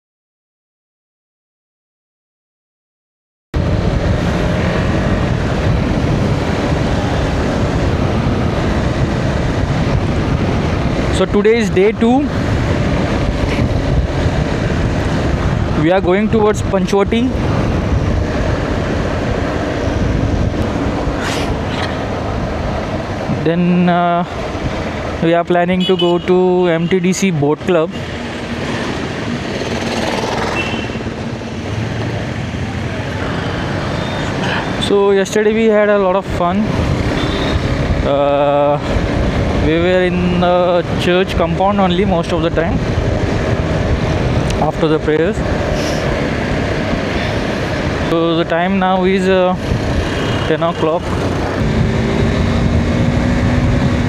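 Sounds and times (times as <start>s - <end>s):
motorcycle engine and road noise: 3.6s - 54.0s
wind rush on microphone: 3.6s - 54.0s
motorcycle engine running: 49.6s - 54.0s.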